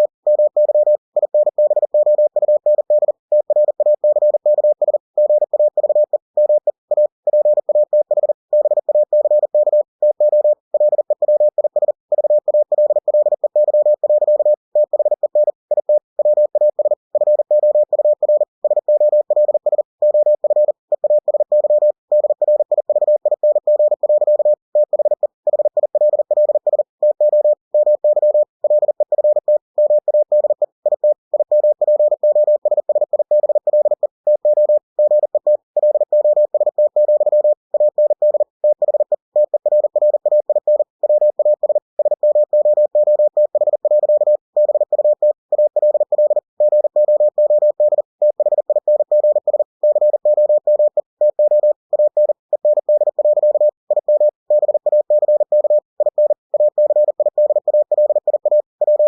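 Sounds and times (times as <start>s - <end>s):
morse code tone: 16.2s - 59.0s.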